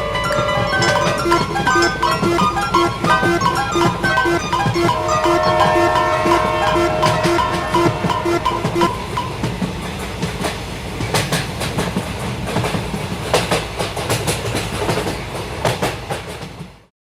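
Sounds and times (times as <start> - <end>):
wheels clacking over rail joints: 0.0 - 9.4
train rumbling: 0.0 - 16.6.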